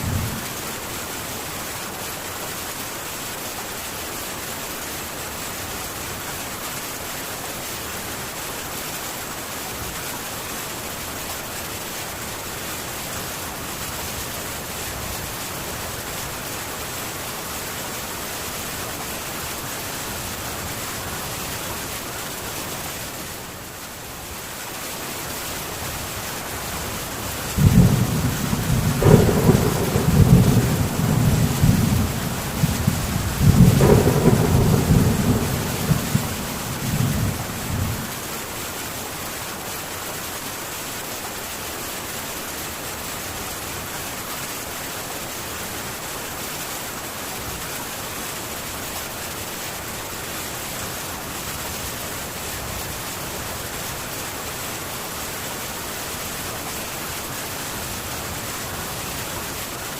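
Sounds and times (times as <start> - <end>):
heavy rain on a tin roof: 0.0 - 59.9
rolling thunder: 27.6 - 38.2.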